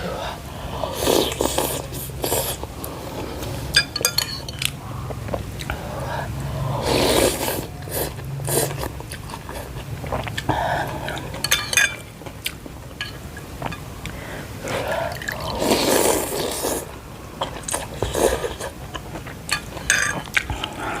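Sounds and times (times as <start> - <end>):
person chewing and slurping: 0.8 - 21.0.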